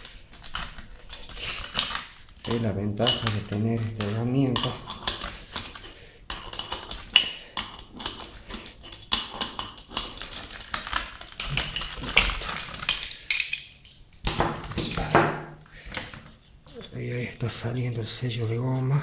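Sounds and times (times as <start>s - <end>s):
metal parts clinking: 8.0s - 15.2s.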